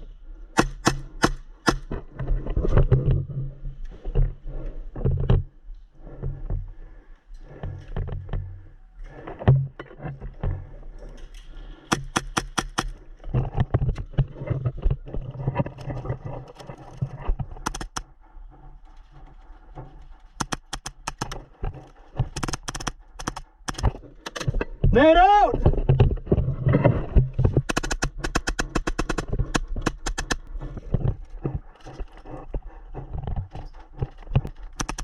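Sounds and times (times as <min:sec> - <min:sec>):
airsoft guns firing rapid shots: 0:00.6 - 0:01.9, 0:11.9 - 0:12.9, 0:17.7 - 0:18.0, 0:20.4 - 0:21.4, 0:22.4 - 0:23.9, 0:27.7 - 0:30.4, 0:34.7 - 0:35.0.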